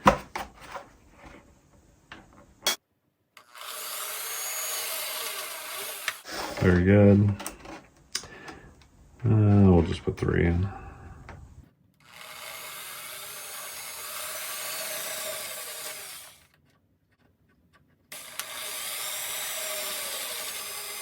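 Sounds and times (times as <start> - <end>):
electric drill boring plastic: 3.4 - 6.4, 12.0 - 16.5, 18.1 - 21.0.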